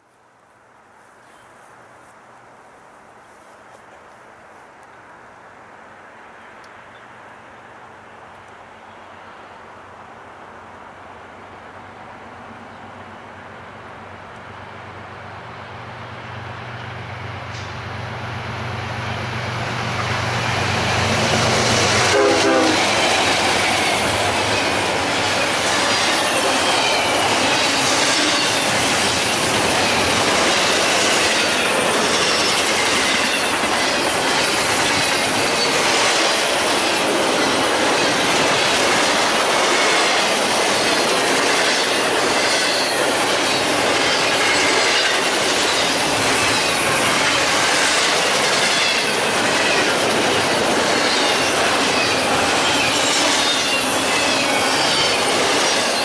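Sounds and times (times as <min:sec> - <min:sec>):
diesel locomotives passing: 0:02.7 - 0:56.0
train wheel clatter: 0:20.0 - 0:56.0
train horn chime: 0:22.0 - 0:23.7
high wheel squeals: 0:22.2 - 0:38.2, 0:48.4 - 0:56.0.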